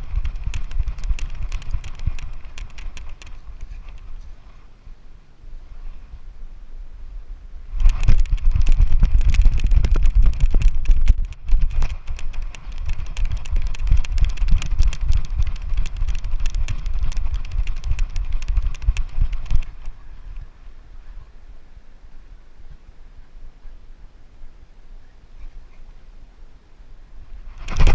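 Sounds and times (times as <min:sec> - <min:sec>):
dog footfalls running: 0:00.0 - 0:04.1, 0:07.9 - 0:20.0.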